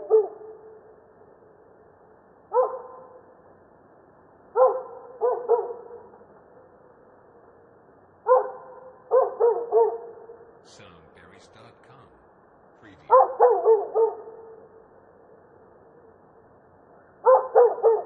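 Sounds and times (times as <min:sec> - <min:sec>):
dog barking: 0:00.0 - 0:00.5, 0:02.5 - 0:03.2, 0:04.6 - 0:06.2, 0:08.3 - 0:10.4, 0:13.0 - 0:14.7, 0:17.2 - 0:18.0.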